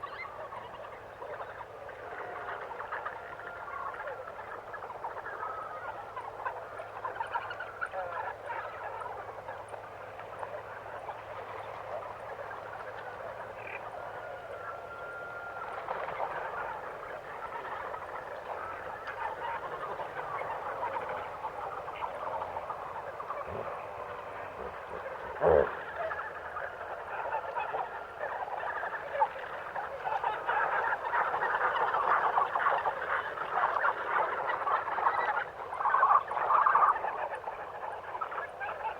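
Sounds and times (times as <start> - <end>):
frogs calling: 11.3 - 33.8.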